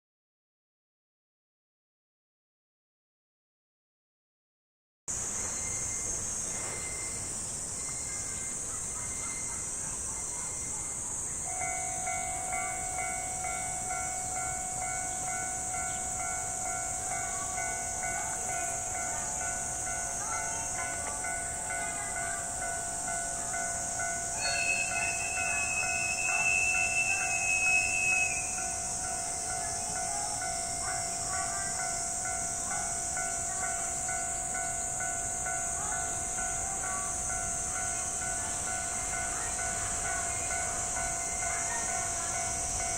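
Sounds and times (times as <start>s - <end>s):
steady high hiss: 5.1s - 42.9s
level-crossing warning bell: 5.2s - 42.9s
steady high tone: 5.5s - 42.9s.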